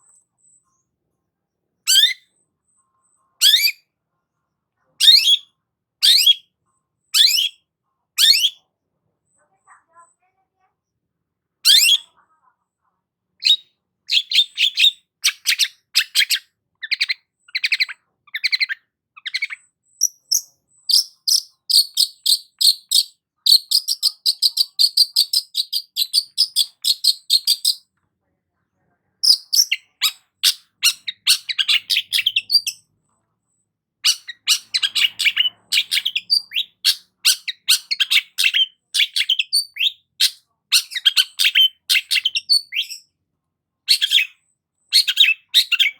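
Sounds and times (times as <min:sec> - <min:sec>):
bird chattering song: 0:01.9 - 0:02.3, 0:03.4 - 0:03.8, 0:05.0 - 0:06.5, 0:07.2 - 0:07.6, 0:08.2 - 0:08.6, 0:11.6 - 0:12.2, 0:13.4 - 0:27.9, 0:29.2 - 0:32.9, 0:34.0 - 0:43.1, 0:43.9 - 0:45.9.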